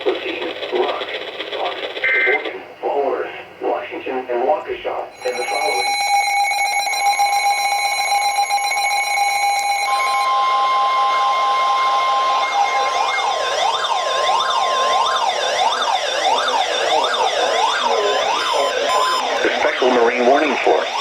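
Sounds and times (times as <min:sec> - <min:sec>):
siren-like sweeping alarm: 0:05.1 - 0:21.0
steady electronic alarm tone: 0:05.1 - 0:21.0.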